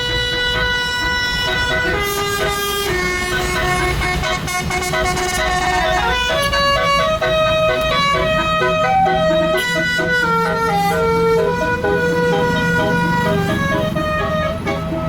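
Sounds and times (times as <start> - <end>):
multi-tone bus horn tune: 0.0 - 15.0.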